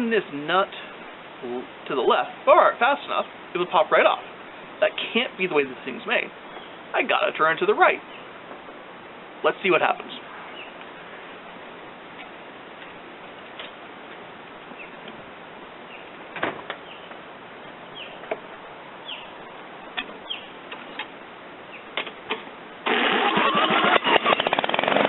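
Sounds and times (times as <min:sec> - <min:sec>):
birds chirping: 0:02.8 - 0:22.6
lawn mower engine running: 0:22.8 - 0:25.0.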